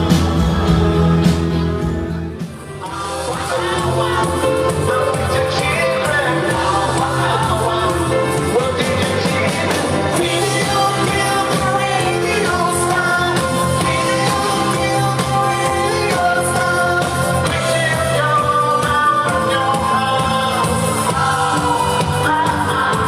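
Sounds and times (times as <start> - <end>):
live rock band with singer: 0.0 - 23.0.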